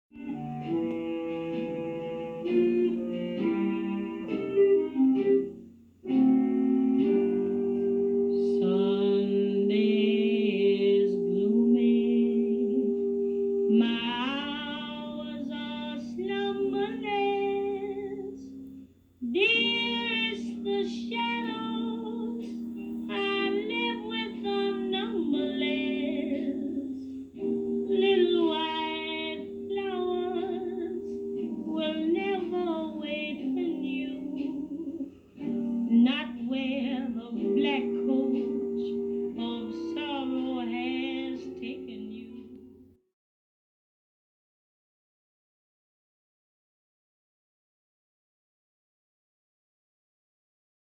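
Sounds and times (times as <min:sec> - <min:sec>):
instrumental accompaniment: 0:00.1 - 0:43.0
woman singing: 0:07.0 - 0:18.6, 0:19.2 - 0:42.7.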